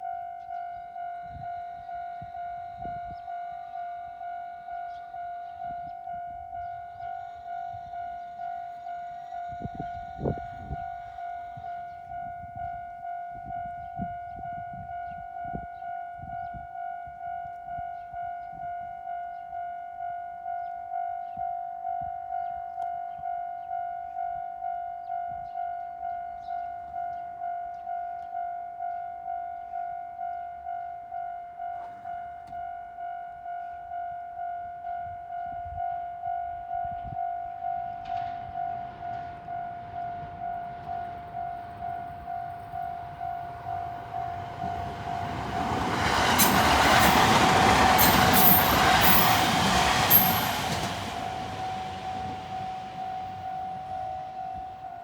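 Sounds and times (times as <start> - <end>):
electric train rumbling past: 4.6 - 15.3, 33.8 - 55.0.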